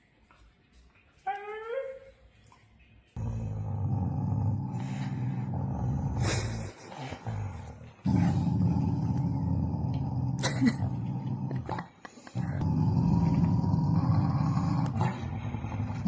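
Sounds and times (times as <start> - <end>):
dog growling: 3.2 - 16.0.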